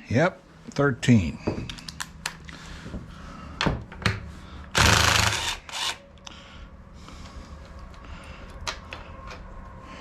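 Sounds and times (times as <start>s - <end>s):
power tool rattling on a bolt: 4.8s - 5.9s.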